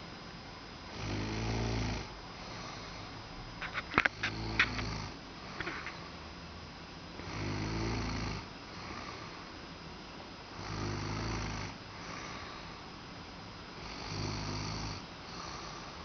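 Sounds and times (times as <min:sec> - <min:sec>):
person snoring: 0:00.9 - 0:03.0, 0:04.2 - 0:05.8, 0:07.2 - 0:09.3, 0:10.6 - 0:12.7, 0:13.8 - 0:16.0
soft breathing: 0:02.3 - 0:06.2, 0:08.7 - 0:09.6, 0:11.9 - 0:13.0, 0:15.2 - 0:16.0.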